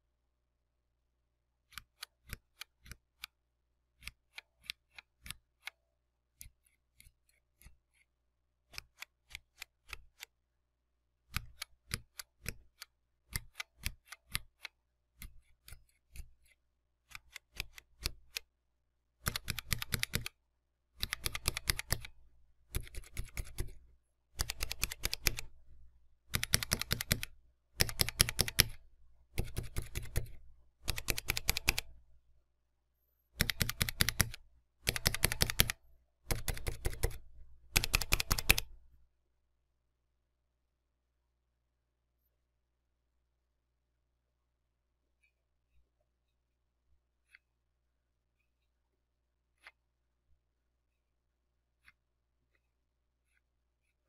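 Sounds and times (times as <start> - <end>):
mechanical keyboard typing: 19.2 - 20.3, 21.0 - 23.8, 24.4 - 25.6, 26.3 - 32.0, 33.4 - 38.8.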